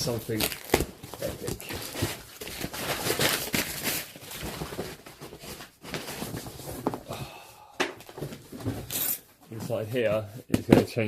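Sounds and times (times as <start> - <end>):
cardboard packaging rustling: 0.0 - 7.2.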